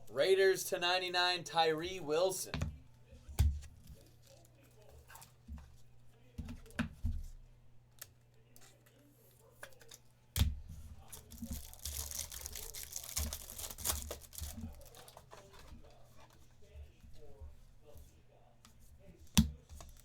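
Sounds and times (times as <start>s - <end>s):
foil card pack ripping open: 11.1s - 15.3s.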